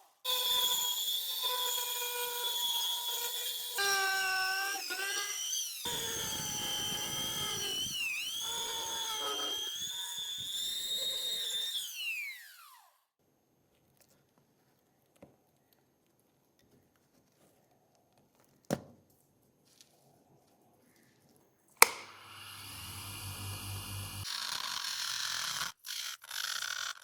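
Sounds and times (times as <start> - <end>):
rotary tool whining: 0.3 - 12.8, 21.8 - 27.0
small click: 21.8 - 22.1.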